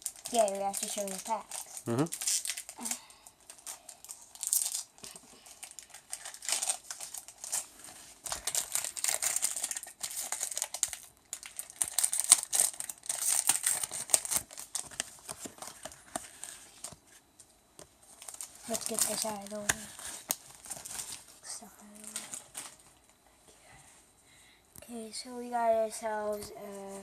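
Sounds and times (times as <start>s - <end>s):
foil wrapper crinkling: 0.0s - 17.1s, 18.1s - 23.0s.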